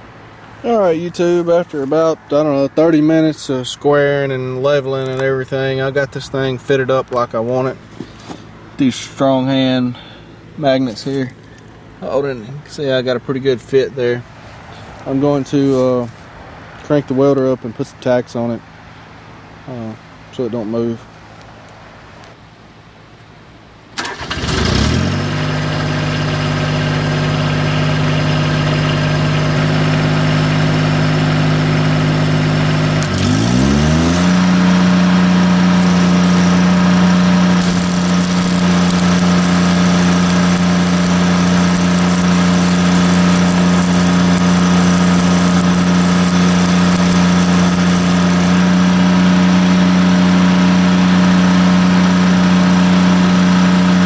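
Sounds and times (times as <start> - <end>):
welder engine cranking and running: 24.0 - 54.0.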